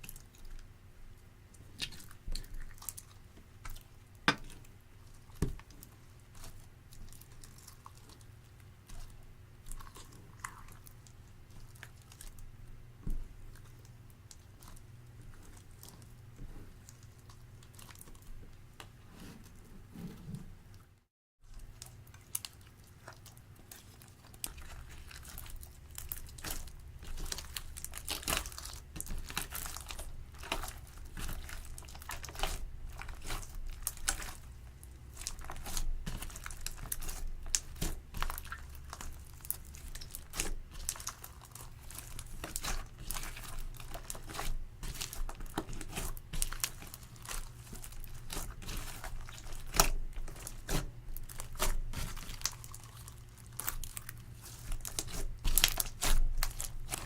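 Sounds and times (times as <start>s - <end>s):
slime crackling and popping: 21.5s - 57.0s.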